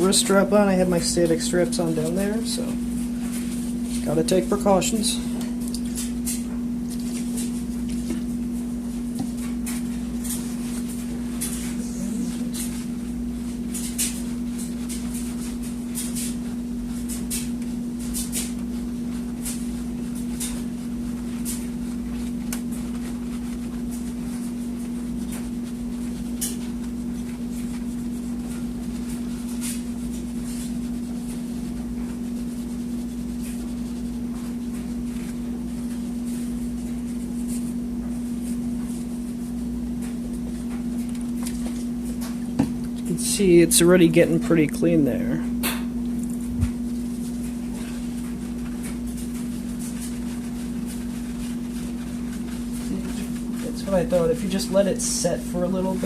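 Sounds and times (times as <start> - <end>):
steady low hum: 0.0 - 56.0
paper towel wiping metal: 6.1 - 40.9, 46.7 - 56.0.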